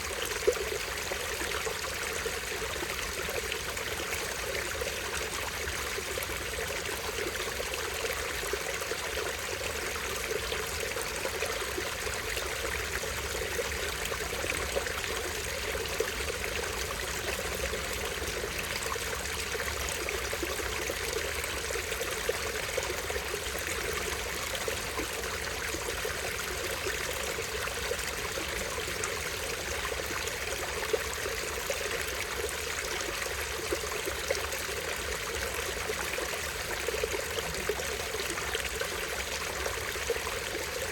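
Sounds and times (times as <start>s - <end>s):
stream water trickling: 0.0s - 40.9s.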